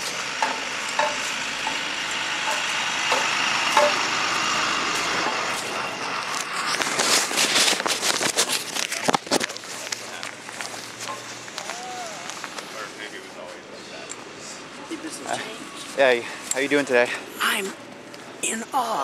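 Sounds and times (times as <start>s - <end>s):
crunching crackles: 0.0s - 13.3s.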